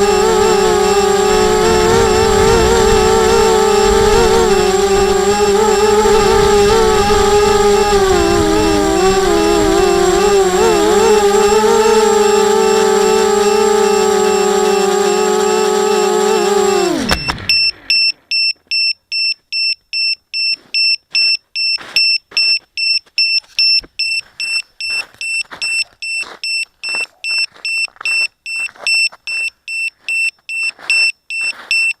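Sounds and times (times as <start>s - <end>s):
drone motors spinning down: 0.0s - 18.2s
high alarm beeps: 17.0s - 32.0s.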